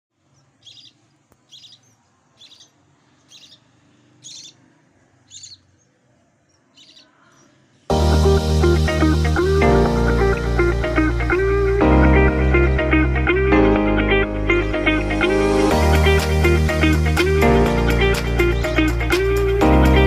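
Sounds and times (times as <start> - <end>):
budgerigar chirping: 0.4 - 4.6, 5.2 - 5.8, 6.7 - 7.2
loud guitar music: 7.9 - 20.0.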